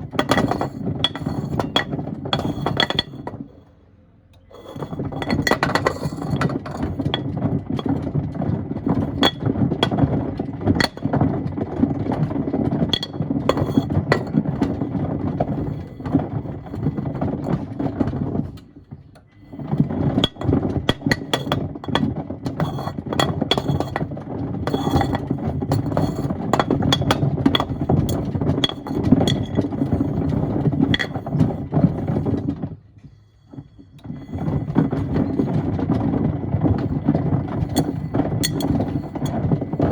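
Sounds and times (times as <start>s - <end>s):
stones clattering against drum: 0.0s - 3.5s, 4.6s - 32.8s, 33.5s - 39.9s
washing machine drum rumbling: 4.7s - 32.8s, 34.0s - 39.9s.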